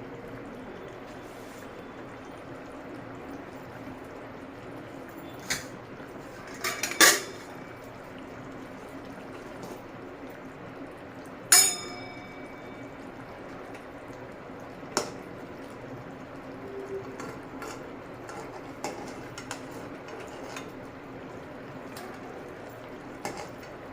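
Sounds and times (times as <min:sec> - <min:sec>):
metal utensil clinking on pot: 0:06.4 - 0:07.5, 0:11.5 - 0:12.6.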